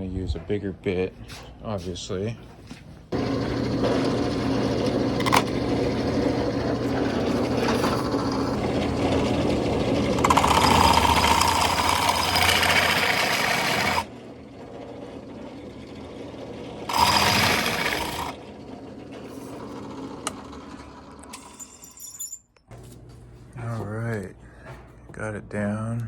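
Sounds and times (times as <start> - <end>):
power drill boring: 3.2 - 21.4.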